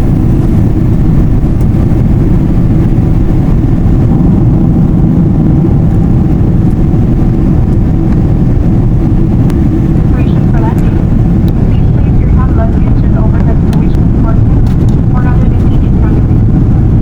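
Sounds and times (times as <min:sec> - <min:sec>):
faint steady hum: 0:00.0 - 0:17.0
jet engine and airflow rumble: 0:00.0 - 0:17.0.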